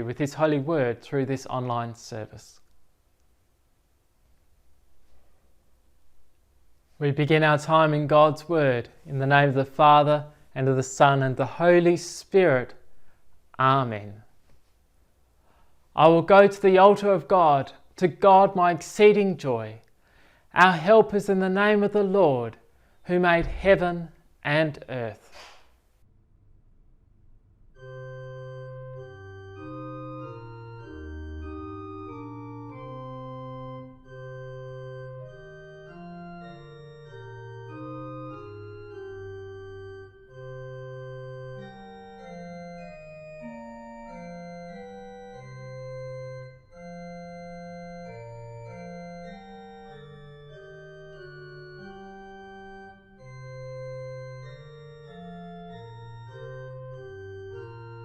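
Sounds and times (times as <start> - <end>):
organ playing hymn chords: 16.0 - 19.7, 20.6 - 25.1, 27.7 - 58.0.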